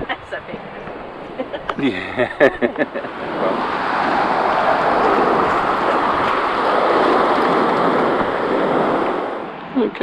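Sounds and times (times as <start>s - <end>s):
vehicle passing by: 2.7s - 9.4s.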